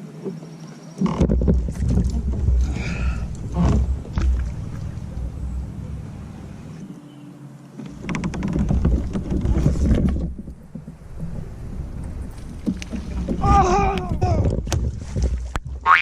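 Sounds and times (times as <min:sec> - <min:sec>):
wind buffeting microphone: 0:07.9 - 0:15.8.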